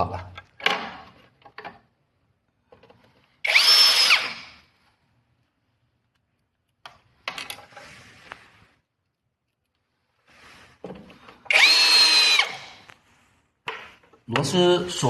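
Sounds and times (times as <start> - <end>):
electric screwdriver whine: 3.5 - 4.6, 11.5 - 12.9.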